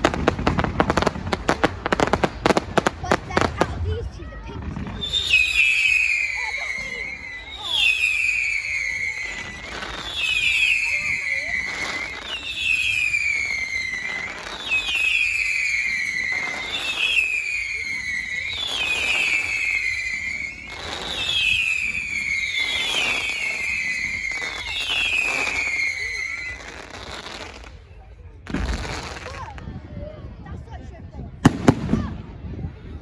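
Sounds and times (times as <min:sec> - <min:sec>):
firework bangs: 0:00.0 - 0:27.8, 0:28.4 - 0:29.7, 0:31.4 - 0:33.0
firework crackle: 0:00.0 - 0:29.7, 0:31.4 - 0:32.2
firework whistles falling in pitch: 0:05.0 - 0:27.7.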